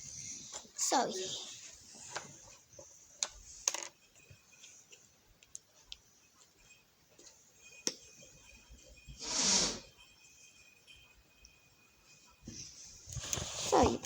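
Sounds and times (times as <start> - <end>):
small objects clicking and tapping: 3.2 - 8.4.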